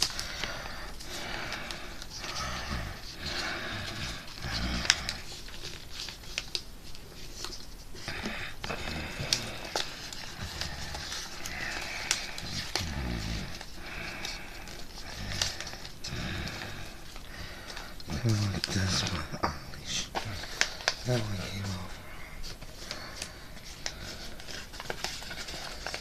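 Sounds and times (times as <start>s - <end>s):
paper rustling and crinkling: 0.0s - 26.0s.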